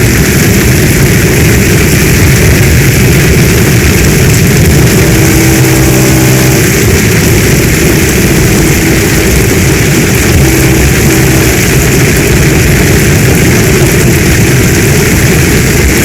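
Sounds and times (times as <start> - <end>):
heavy rain: 0.0 - 16.0.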